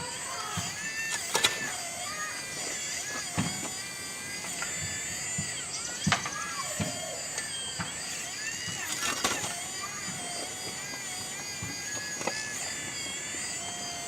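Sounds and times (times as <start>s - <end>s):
electric hydraulic pump whining: 0.0s - 14.0s.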